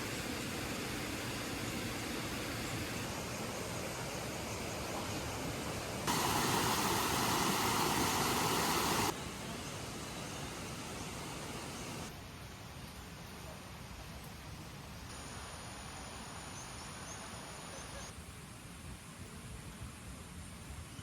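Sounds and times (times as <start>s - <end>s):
steady rushing noise: 0.0s - 12.1s.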